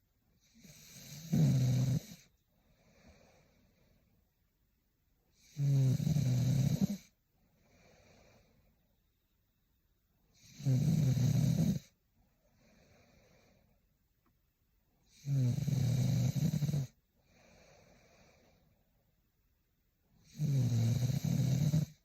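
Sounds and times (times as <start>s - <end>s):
woman snoring: 0.4s - 2.3s, 5.4s - 7.1s, 10.4s - 11.9s, 15.1s - 18.6s, 20.2s - 22.0s
soft breaths: 2.0s - 4.6s, 6.7s - 9.5s, 11.5s - 14.4s, 15.0s - 19.2s.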